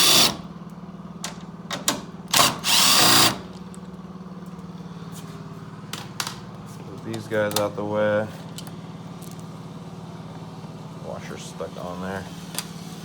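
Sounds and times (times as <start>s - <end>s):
power drill whirring: 0.0s - 0.4s, 2.3s - 3.4s.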